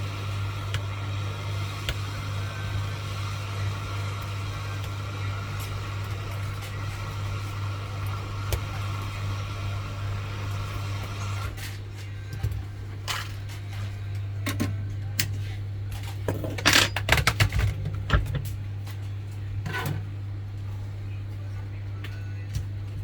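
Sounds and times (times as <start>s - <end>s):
low machine hum: 0.0s - 23.0s.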